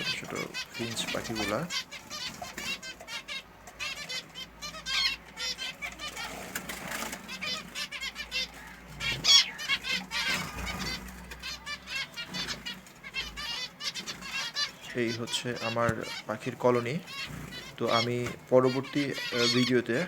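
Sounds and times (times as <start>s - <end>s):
finches chirping: 0.0s - 20.0s
wings fluttering: 5.8s - 14.7s, 17.1s - 18.4s.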